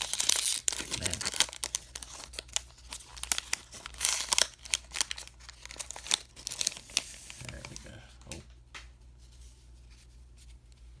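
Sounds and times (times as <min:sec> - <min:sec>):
foil wrapper crinkling and tearing: 0:00.0 - 0:08.0.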